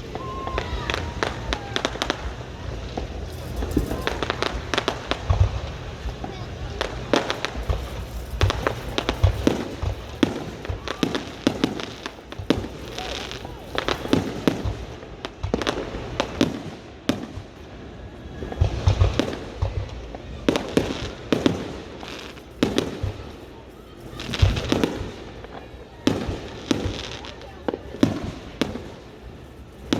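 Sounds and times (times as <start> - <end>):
low rumble: 0.0 - 14.1
fireworks bangs and crackling: 0.0 - 29.9.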